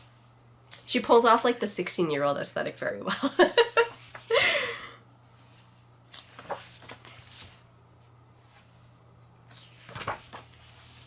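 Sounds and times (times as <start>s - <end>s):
pages rustling and turning: 3.9s - 4.3s, 5.3s - 11.0s.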